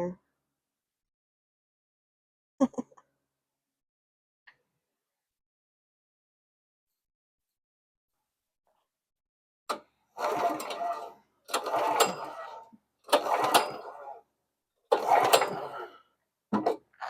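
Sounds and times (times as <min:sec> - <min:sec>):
recoil starter cord pulls: 0:09.7 - 0:14.1, 0:14.9 - 0:16.0
engine turning over: 0:10.2 - 0:14.0, 0:14.9 - 0:15.9.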